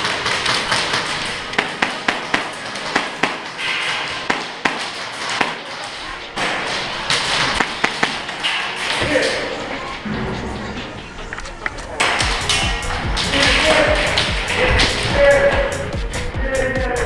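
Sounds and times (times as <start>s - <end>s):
airsoft guns firing: 0.0s - 9.0s.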